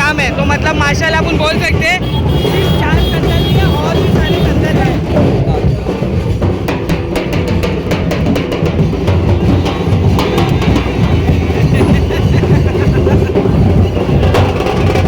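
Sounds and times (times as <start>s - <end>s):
loud dance music with heavy bass: 0.0s - 6.4s.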